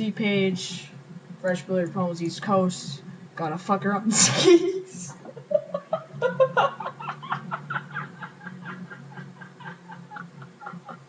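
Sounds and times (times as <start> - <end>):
steady low hum: 0.0 - 11.0
man laughing: 4.4 - 11.0.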